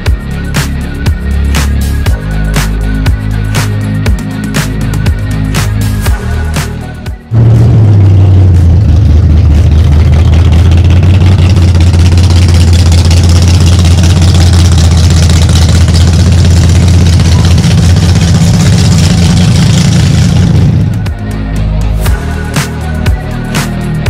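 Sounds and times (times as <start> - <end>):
car engine idling: 0.0 - 23.4.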